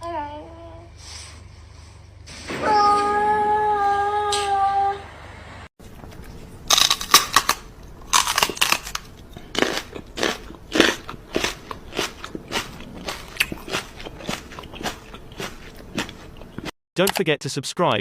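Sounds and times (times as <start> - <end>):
crisp crunching: 5.9 - 16.7.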